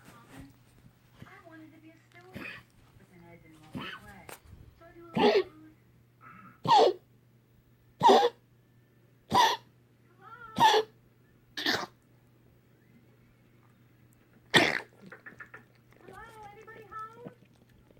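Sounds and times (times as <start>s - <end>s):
short sharp coughs: 5.2s - 5.5s, 6.3s - 7.0s, 8.0s - 8.4s, 9.3s - 9.7s, 10.6s - 10.9s, 11.6s - 12.0s, 14.5s - 14.9s.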